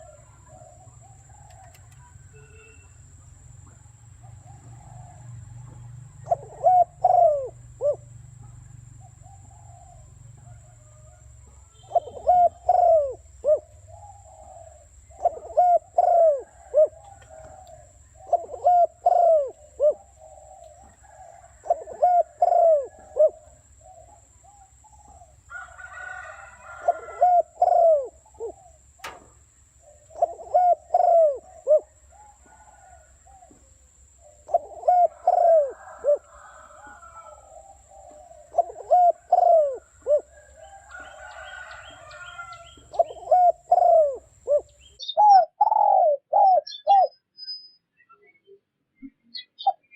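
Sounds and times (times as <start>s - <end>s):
dove cooing: 0.0s - 2.7s, 4.2s - 47.1s
sharp click: 29.0s - 29.4s.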